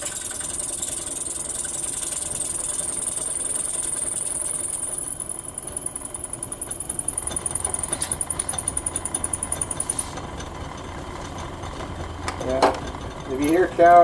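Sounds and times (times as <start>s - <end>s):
drill bit chattering: 0.0s - 10.2s.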